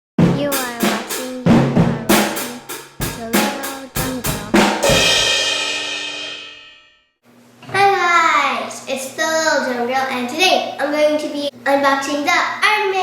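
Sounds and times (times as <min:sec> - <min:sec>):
drum fill: 0:00.2 - 0:06.8
cymbal crash: 0:00.8 - 0:06.9.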